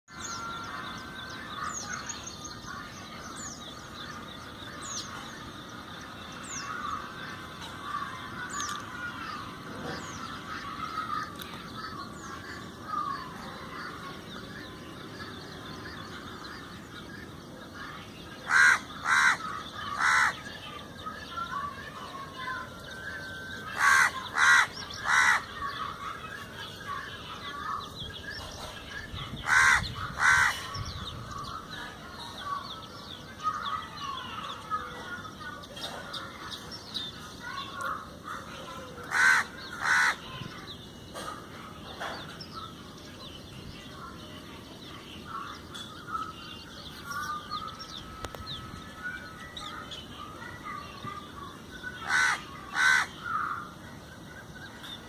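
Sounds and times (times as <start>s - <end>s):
small birds chirping: 0.1s - 55.0s
crow cawing: 18.5s - 20.4s, 23.8s - 25.5s, 29.4s - 30.7s, 39.1s - 40.2s, 52.0s - 53.6s.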